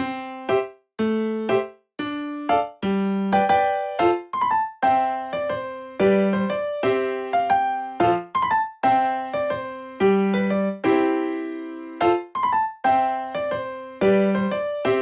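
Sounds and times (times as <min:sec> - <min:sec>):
electric piano melody: 0:00.0 - 0:15.0.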